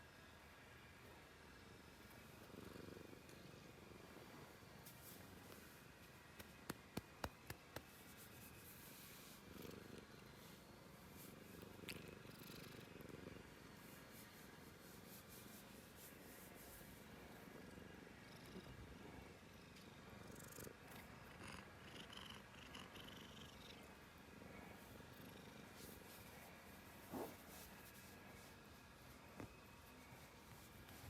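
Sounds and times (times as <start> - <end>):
cat purring: 1.6 - 5.6, 8.4 - 31.0
soft rustles: 4.8 - 9.5, 25.6 - 31.0.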